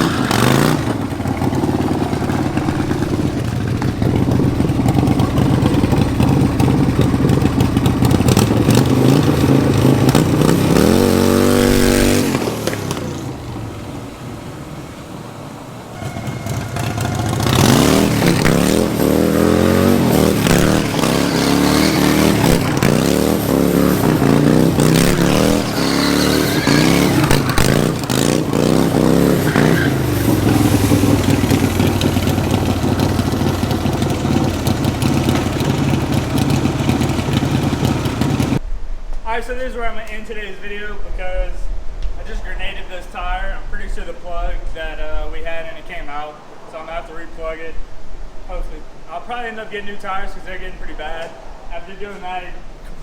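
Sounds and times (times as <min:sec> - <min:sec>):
engine revving: 0:00.0 - 0:38.6.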